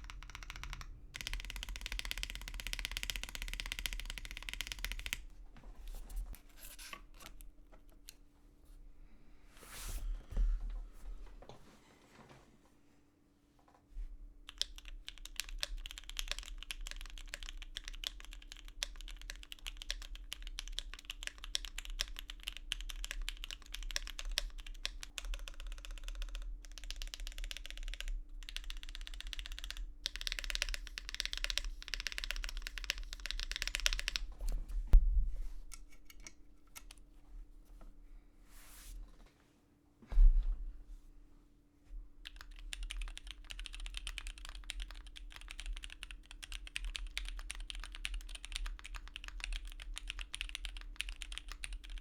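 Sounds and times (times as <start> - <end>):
mechanical keyboard typing: 0.0 - 5.3, 14.4 - 34.4, 42.2 - 52.0.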